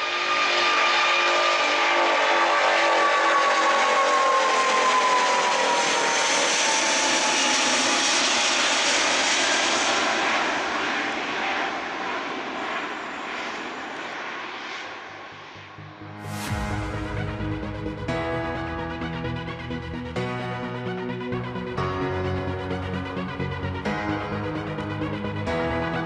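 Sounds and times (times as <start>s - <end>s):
jet airliner passing: 0.0s - 26.0s.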